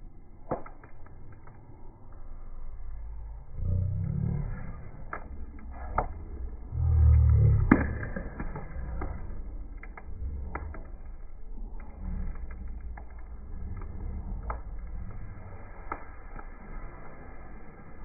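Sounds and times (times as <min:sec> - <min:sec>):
campfire crackling and popping: 0:00.0 - 0:18.0
low rumble: 0:00.0 - 0:18.0.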